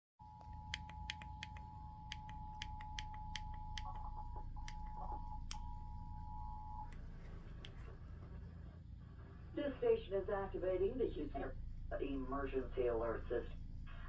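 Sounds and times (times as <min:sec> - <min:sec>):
low hum: 0:00.2 - 0:14.0
sharp clicks: 0:00.6 - 0:05.6.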